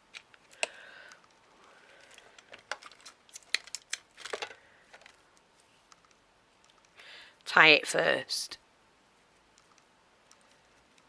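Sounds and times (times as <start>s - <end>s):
craft materials clicking and rustling: 0.0s - 7.0s.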